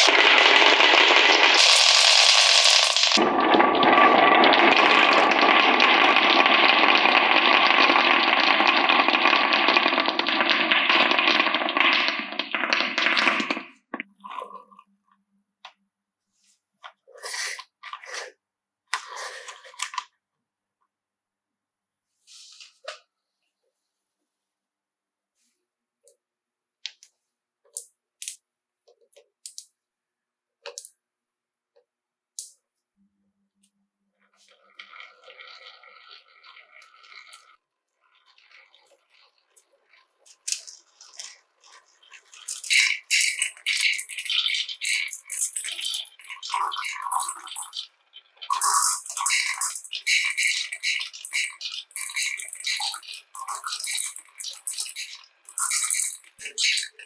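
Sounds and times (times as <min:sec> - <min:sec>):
marbles rattling down marble run: 0:00.0 - 0:03.2, 0:40.3 - 0:47.8, 0:48.5 - 0:57.0.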